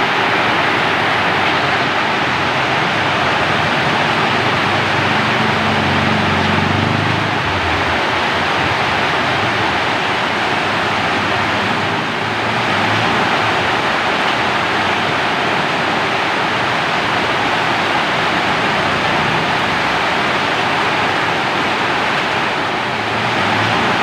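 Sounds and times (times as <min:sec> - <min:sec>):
heavy rainfall: 0:00.0 - 0:24.0.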